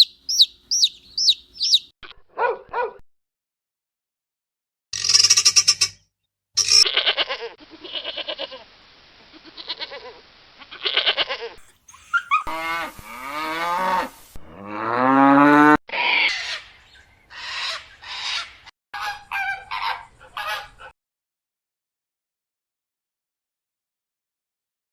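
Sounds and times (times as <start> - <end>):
short repeated animal calls: 0.0 - 1.9, 10.6 - 14.1
cow mooing: 12.4 - 15.8.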